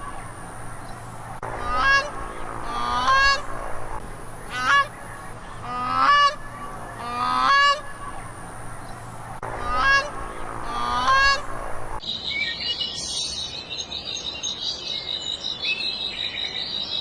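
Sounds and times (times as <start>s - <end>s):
goose honking: 1.4s - 12.0s.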